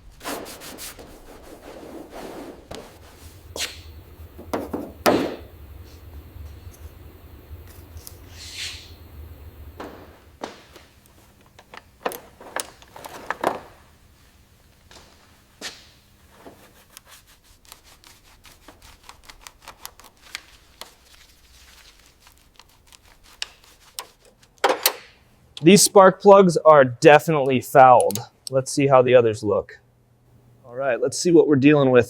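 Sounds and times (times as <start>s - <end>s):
small irregular ticks: 16.9s - 24.4s.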